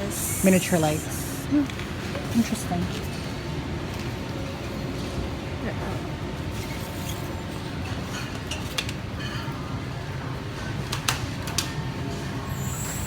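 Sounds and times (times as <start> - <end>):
steady ambient hum: 0.0 - 5.6.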